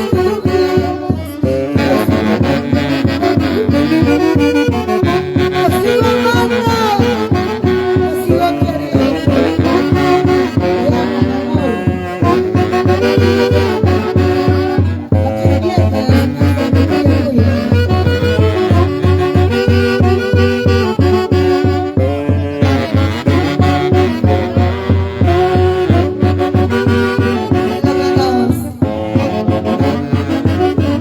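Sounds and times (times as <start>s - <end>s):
andean dance band playing: 0.0s - 31.0s
horns playing melody: 0.0s - 31.0s.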